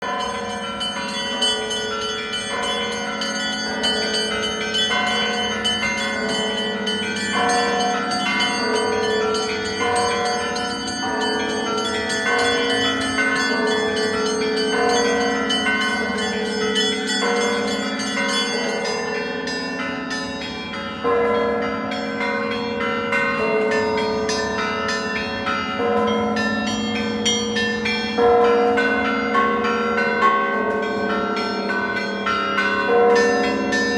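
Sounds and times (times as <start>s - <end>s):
church bells pealing: 0.0s - 33.9s.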